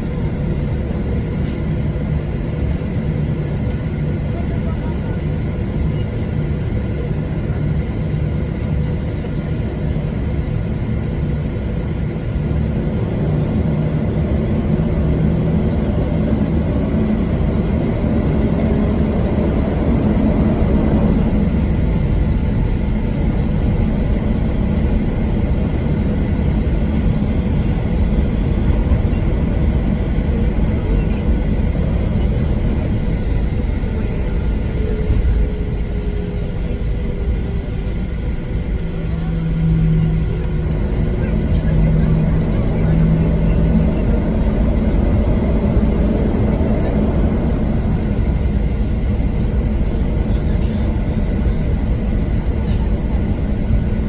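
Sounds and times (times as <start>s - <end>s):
jet engine rumble in cabin: 0.0s - 54.0s
low hum: 11.4s - 54.0s.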